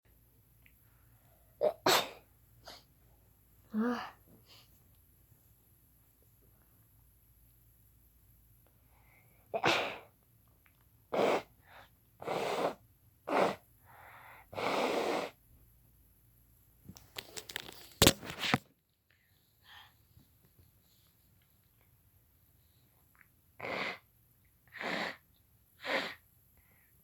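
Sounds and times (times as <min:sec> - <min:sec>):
person sneezing: 0:01.6 - 0:02.9, 0:09.6 - 0:10.1.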